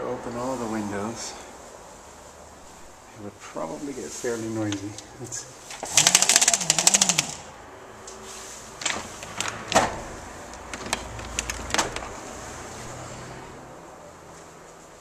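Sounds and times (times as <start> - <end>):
street traffic hum: 0.0 - 15.0
vehicle low rumble: 0.0 - 15.0
sharp knocks and clicks: 10.6 - 12.2.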